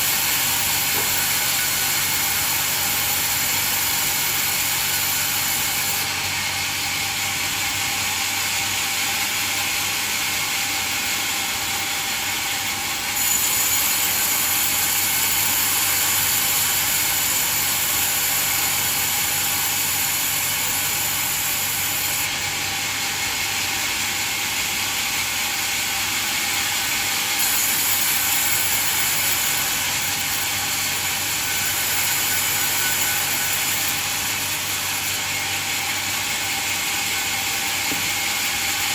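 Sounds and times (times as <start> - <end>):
band saw cutting log: 0.0 - 38.9
thin high whine: 26.4 - 38.9.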